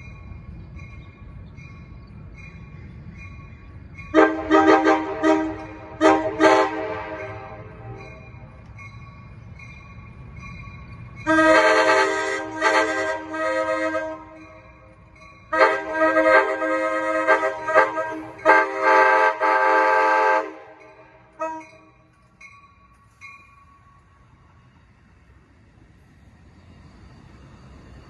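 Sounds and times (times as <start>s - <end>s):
train air horn blasts: 4.1s - 8.2s, 11.2s - 14.5s, 15.5s - 21.9s.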